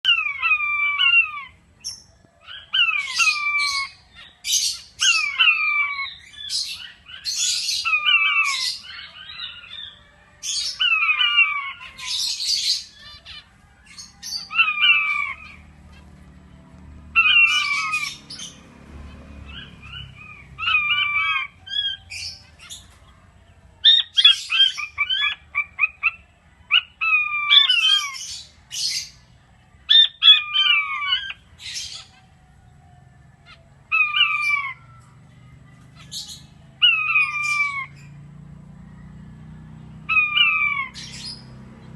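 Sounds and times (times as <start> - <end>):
quail whistled calls: 0.0 - 16.3, 17.1 - 18.6, 19.4 - 23.2, 23.8 - 29.3, 29.9 - 38.2, 40.0 - 41.6.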